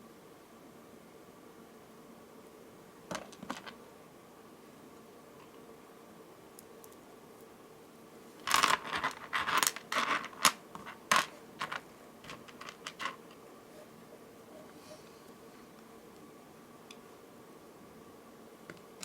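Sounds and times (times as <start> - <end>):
small beads clicking and rattling: 8.4 - 13.4.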